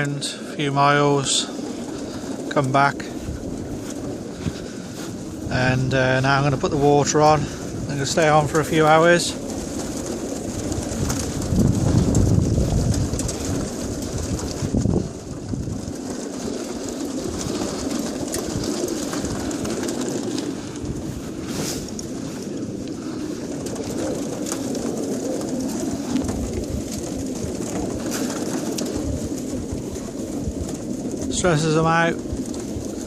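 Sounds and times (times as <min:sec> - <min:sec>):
pigeons cooing: 0:00.0 - 0:33.0.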